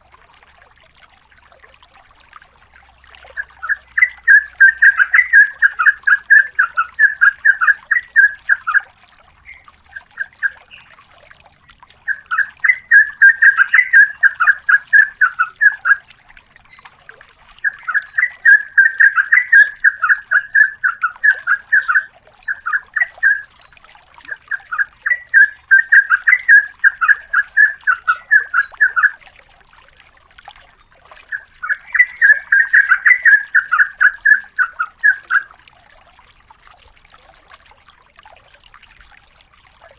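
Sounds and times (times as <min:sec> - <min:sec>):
bulbul chattering song: 0:03.3 - 0:29.2, 0:31.2 - 0:35.5
high bird twittering: 0:03.4 - 0:08.8, 0:09.4 - 0:11.4, 0:12.0 - 0:29.2, 0:31.3 - 0:35.5.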